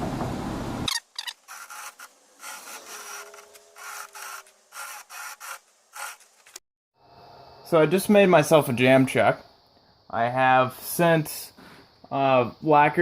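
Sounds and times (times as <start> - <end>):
scraping on wood: 1.0 - 6.6.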